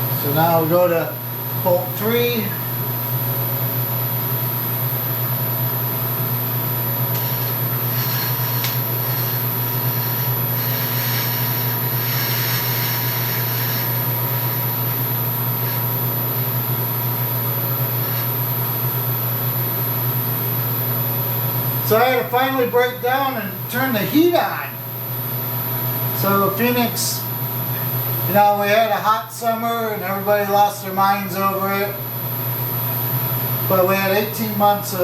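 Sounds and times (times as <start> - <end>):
milling machine running: 1.1 - 22.7
milling machine drilling: 7.0 - 17.0.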